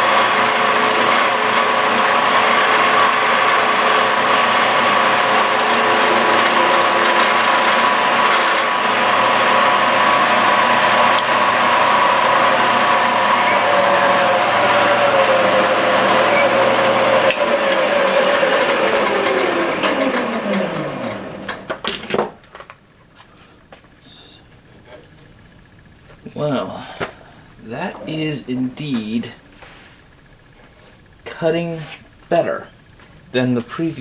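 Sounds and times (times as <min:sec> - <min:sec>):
cutter cutting spinning wood: 0:00.0 - 0:22.1
lathe running and winding down: 0:00.0 - 0:22.2.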